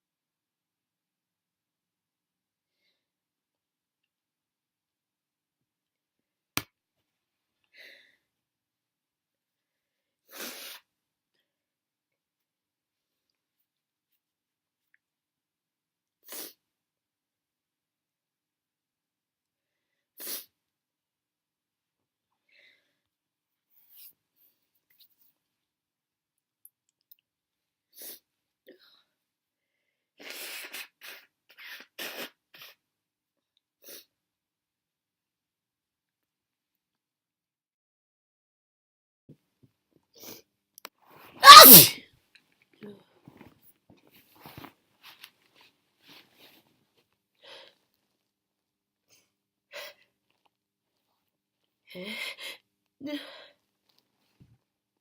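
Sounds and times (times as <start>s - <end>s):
person sniffing: 10.3s - 10.8s, 41.4s - 42.0s
short breaths: 41.4s - 41.8s
person sneezing: 41.4s - 42.0s.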